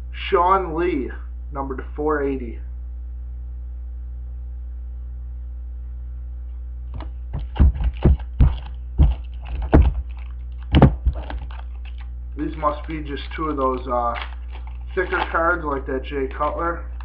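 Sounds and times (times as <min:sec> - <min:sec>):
electrical hum: 0:00.0 - 0:17.0
trading cards being handled: 0:07.0 - 0:17.0.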